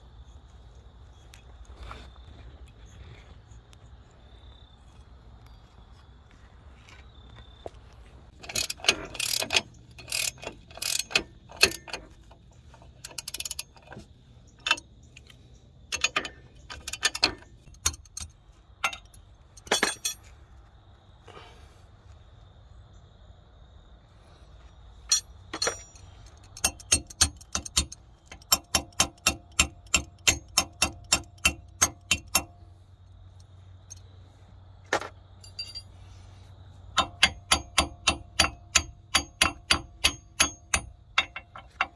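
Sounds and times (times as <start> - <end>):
metal tools clanking on steel: 8.3 - 20.4, 25.0 - 32.8, 34.9 - 36.2, 36.9 - 41.9
ringing metal blows: 35.4 - 36.0, 37.0 - 41.9.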